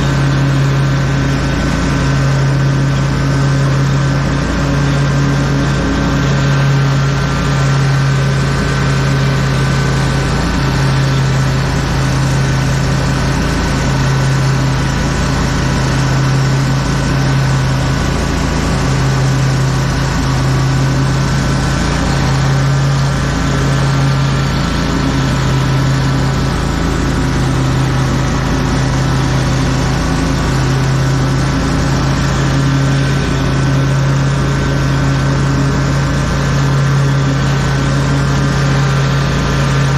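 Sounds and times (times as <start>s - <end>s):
lawn mower engine running: 0.0s - 39.9s.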